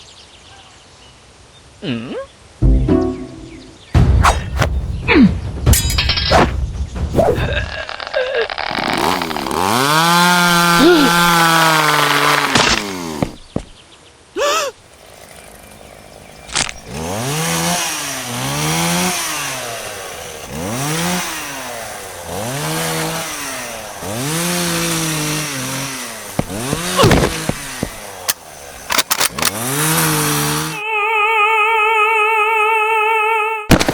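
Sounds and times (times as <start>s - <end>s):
chainsaw revving: 8.6s - 13.5s, 14.8s - 30.8s.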